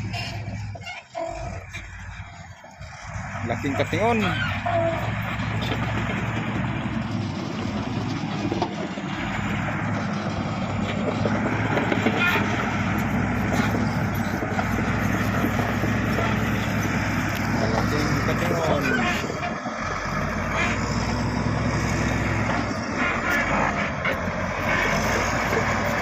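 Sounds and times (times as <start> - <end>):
heavy machine engine running: 0.0 - 26.0.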